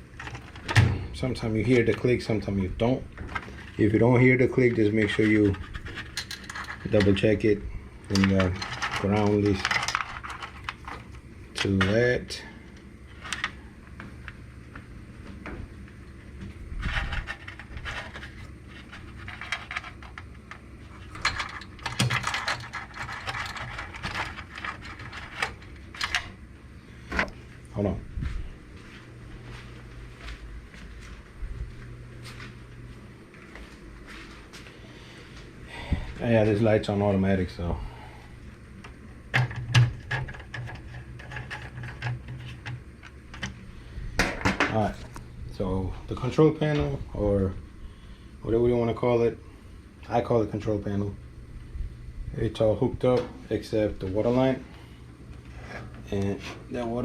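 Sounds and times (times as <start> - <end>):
low steady hum: 0.0 - 57.0
clicks and rattles of metal parts: 4.7 - 7.3, 8.0 - 12.0, 16.8 - 26.4, 38.8 - 43.6.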